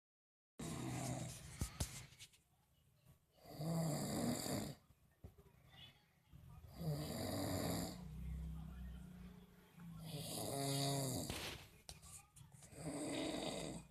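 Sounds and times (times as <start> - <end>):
rasping snore: 0.6 - 1.4, 3.4 - 4.8, 6.7 - 8.1, 10.0 - 11.5, 12.7 - 13.9.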